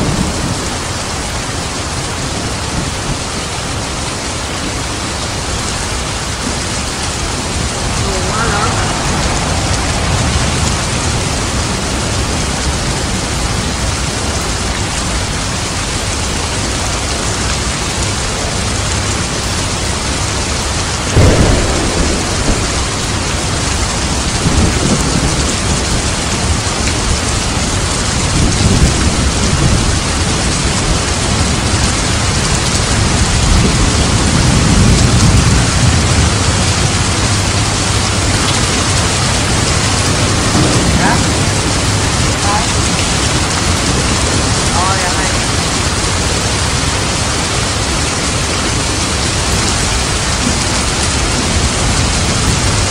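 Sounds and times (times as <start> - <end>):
heavy rain: 0.0 - 52.9
low rolling thunder rumbles: 0.0 - 52.9
sharp thunderclap: 6.4 - 14.0, 21.0 - 47.9.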